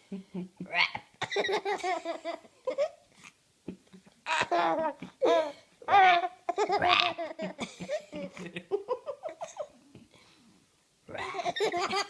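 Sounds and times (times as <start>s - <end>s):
baby giggling: 1.2s - 3.0s, 4.3s - 9.8s, 11.2s - 12.0s.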